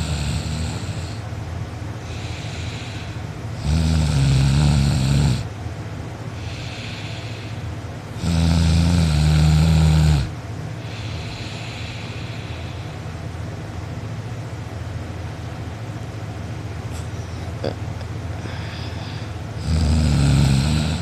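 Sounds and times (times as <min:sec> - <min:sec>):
person snoring loudly: 0:00.0 - 0:01.2, 0:02.1 - 0:05.5, 0:08.2 - 0:10.3, 0:19.6 - 0:21.0
quiet breathing: 0:02.0 - 0:03.4, 0:06.3 - 0:07.9, 0:10.8 - 0:13.3, 0:18.4 - 0:19.6.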